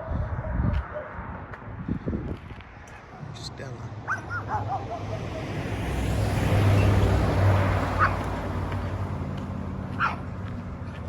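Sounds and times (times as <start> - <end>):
car passing by: 3.8 - 11.0.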